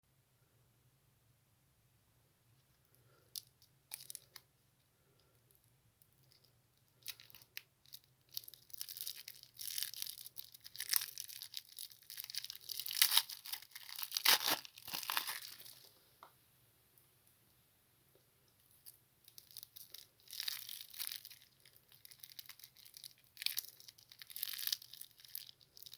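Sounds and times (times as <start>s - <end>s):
plastic wrapper crinkling and tearing: 3.4s - 4.4s, 6.3s - 15.9s, 18.8s - 25.9s.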